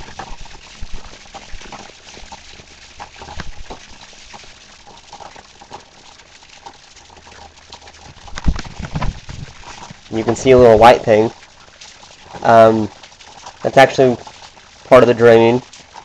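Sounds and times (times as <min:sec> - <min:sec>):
drips and splashes: 0:00.0 - 0:16.0
heavy rain hissing: 0:07.5 - 0:11.4, 0:12.2 - 0:13.0.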